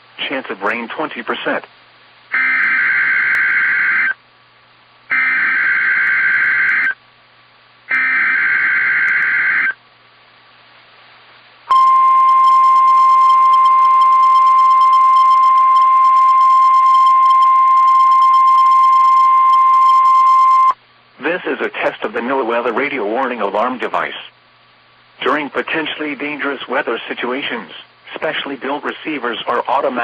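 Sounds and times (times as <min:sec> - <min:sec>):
steady warning alarm tone: 0:02.3 - 0:04.2, 0:05.1 - 0:07.0, 0:07.9 - 0:09.8, 0:11.7 - 0:20.8.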